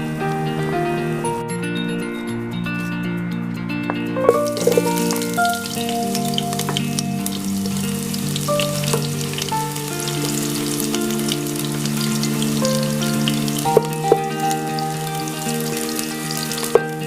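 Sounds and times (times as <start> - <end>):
background music with held notes: 0.0 - 17.0
food sizzling in hot oil: 4.3 - 17.0.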